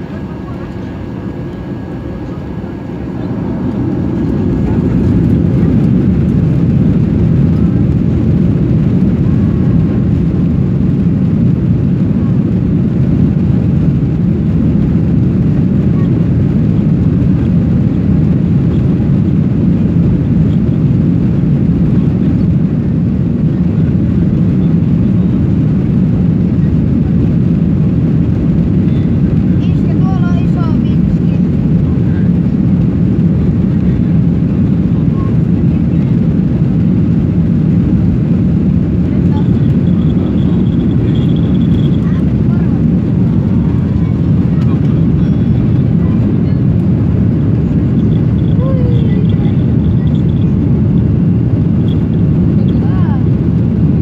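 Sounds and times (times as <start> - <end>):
jet engines spooling up: 0.0 - 10.3, 34.2 - 52.8.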